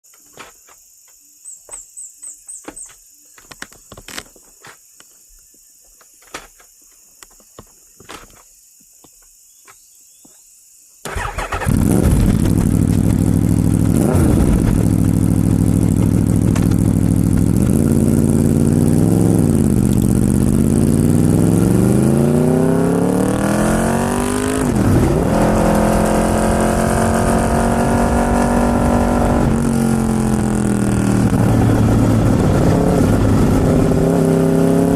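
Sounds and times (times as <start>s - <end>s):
motorcycle engine revving: 11.1s - 34.9s.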